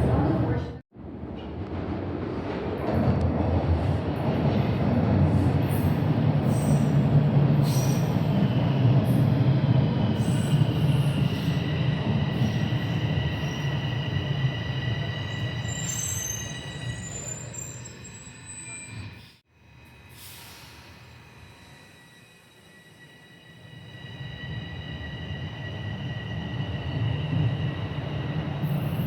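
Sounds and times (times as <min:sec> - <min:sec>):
train rumbling on rails: 0:00.0 - 0:29.0
high-pitched wheel squeal: 0:15.1 - 0:19.4.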